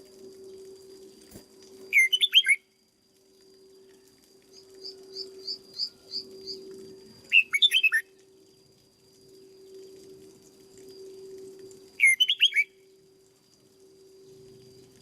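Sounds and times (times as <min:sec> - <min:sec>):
steady low hum: 0:00.0 - 0:15.0
bird whistled song: 0:01.9 - 0:02.7, 0:04.8 - 0:06.6, 0:07.3 - 0:08.1, 0:12.0 - 0:12.9.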